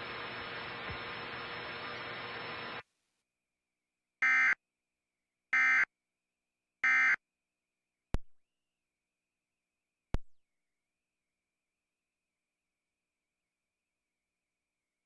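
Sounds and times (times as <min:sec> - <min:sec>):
static hiss: 0:00.0 - 0:02.8.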